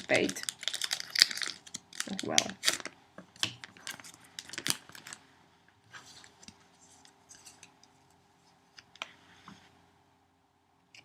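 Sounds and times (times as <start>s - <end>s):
cards and packaging clicking: 0.1s - 5.2s.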